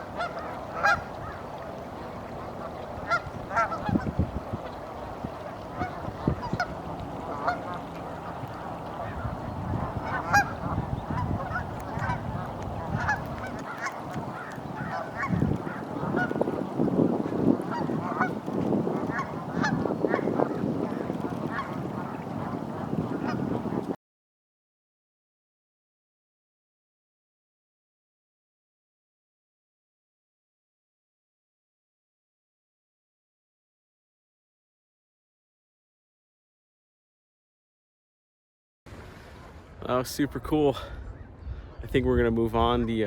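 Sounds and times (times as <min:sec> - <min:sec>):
geese honking: 0:00.0 - 0:23.9.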